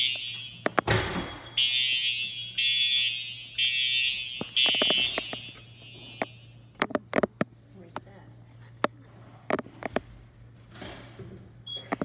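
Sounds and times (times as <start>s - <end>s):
fire alarm horn blasts: 0.0s - 6.8s.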